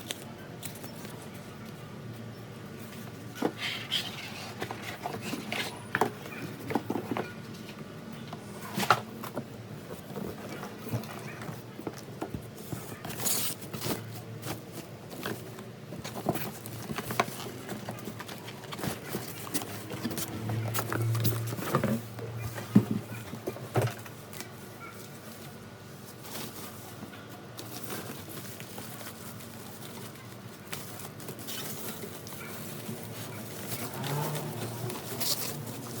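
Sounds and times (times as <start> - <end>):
packaging rustle: 12.7 - 36.0.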